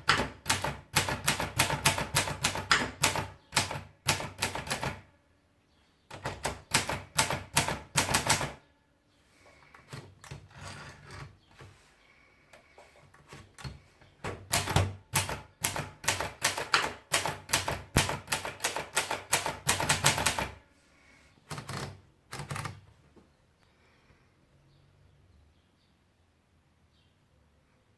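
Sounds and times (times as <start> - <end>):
typewriter keys clacking: 14.5 - 20.6.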